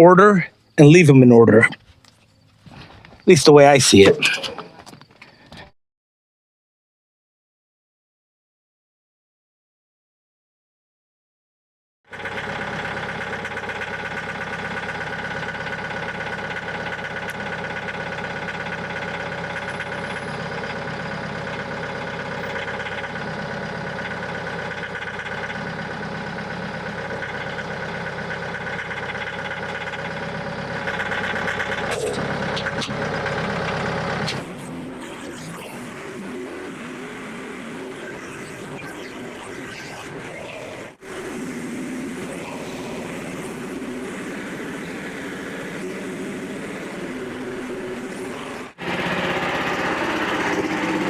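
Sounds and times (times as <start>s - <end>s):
engine running steadily: 12.1s - 51.0s.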